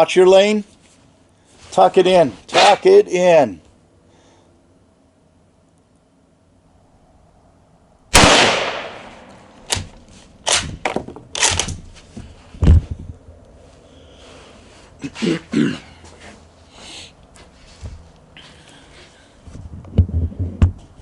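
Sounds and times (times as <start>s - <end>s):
rifle shot: 8.1s - 9.9s.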